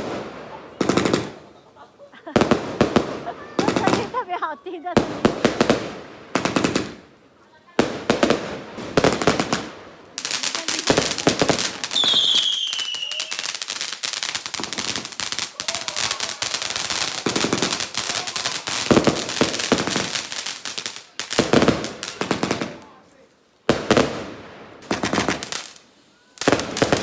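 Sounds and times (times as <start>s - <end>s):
fireworks crackling bangs: 0.0s - 27.0s
falling firework whistle: 11.8s - 13.6s.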